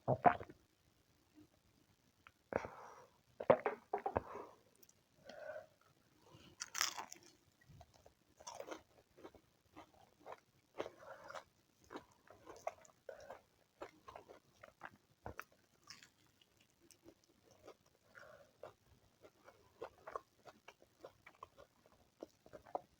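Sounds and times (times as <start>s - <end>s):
person chewing and biting food: 6.6s - 7.3s, 8.0s - 14.8s.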